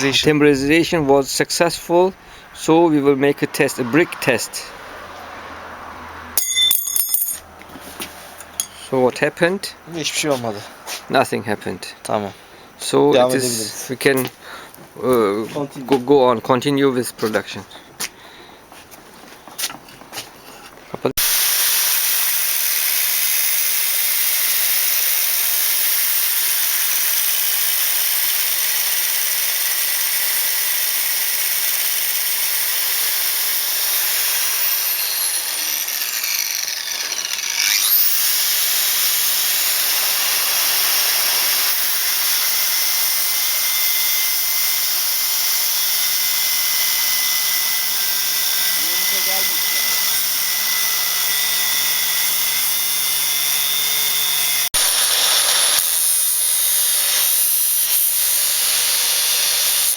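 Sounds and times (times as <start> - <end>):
power grinder grinding steel: 21.2 - 59.9.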